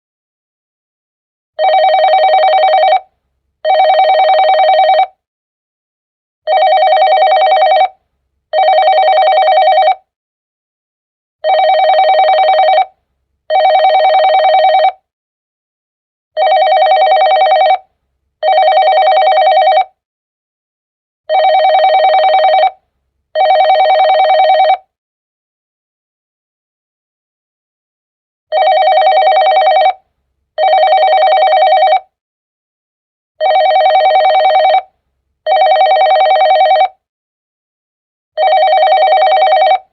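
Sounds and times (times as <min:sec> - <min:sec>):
electronic phone ringtone: 0:01.6 - 0:05.2, 0:06.5 - 0:10.1, 0:11.4 - 0:15.0, 0:16.4 - 0:20.0, 0:21.3 - 0:22.8, 0:23.4 - 0:24.9, 0:28.5 - 0:30.0, 0:30.6 - 0:32.2, 0:33.4 - 0:34.9, 0:35.5 - 0:37.0, 0:38.4 - 0:39.9.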